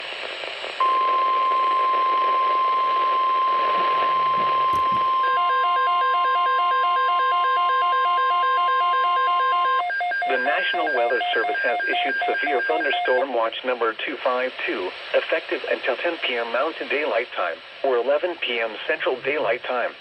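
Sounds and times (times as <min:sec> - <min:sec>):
steady high alarm tone: 0:00.8 - 0:13.2
radio hiss: 0:10.3 - 0:20.0.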